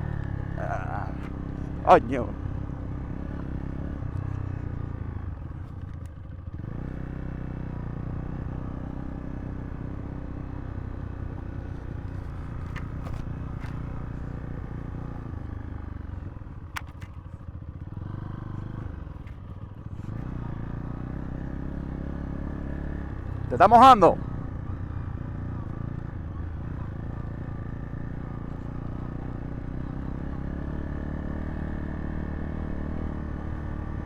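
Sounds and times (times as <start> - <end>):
motorcycle engine running: 0.0 - 34.0
sharp clicks and knocks: 16.8 - 17.2.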